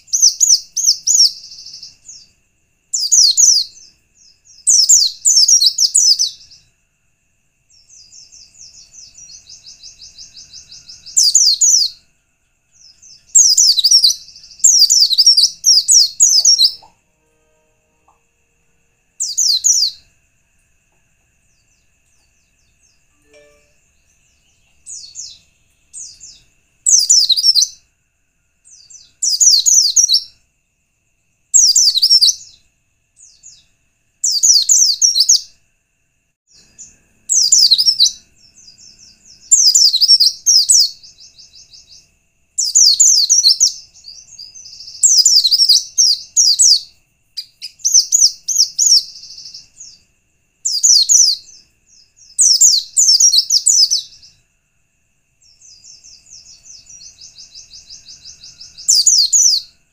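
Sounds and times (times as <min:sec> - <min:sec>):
high rapid bird twittering: 0:00.0 - 0:02.3, 0:12.8 - 0:16.9, 0:36.8 - 0:42.0, 0:42.6 - 0:50.0.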